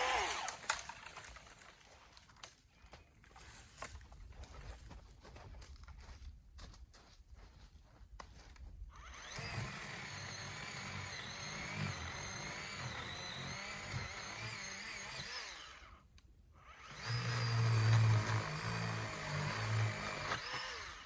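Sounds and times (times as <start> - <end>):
electric chainsaw cutting limbs: 0.0 - 1.9, 9.0 - 21.0.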